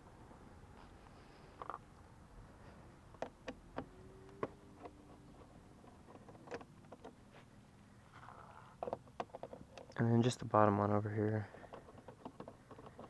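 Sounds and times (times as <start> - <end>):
tools tapping on plastic panels: 3.1 - 7.2, 8.7 - 10.0, 11.5 - 13.0.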